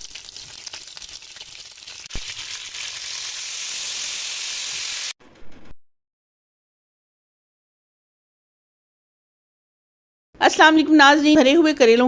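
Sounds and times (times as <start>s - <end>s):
food sizzling in hot oil: 0.0s - 5.2s.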